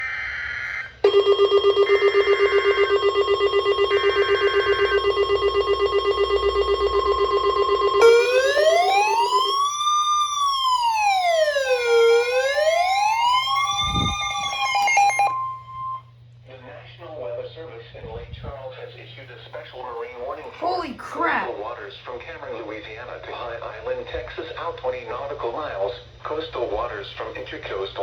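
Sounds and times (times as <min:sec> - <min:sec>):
electronic siren wailing: 0:00.0 - 0:16.1
loud pulsing alert tone: 0:01.1 - 0:16.0.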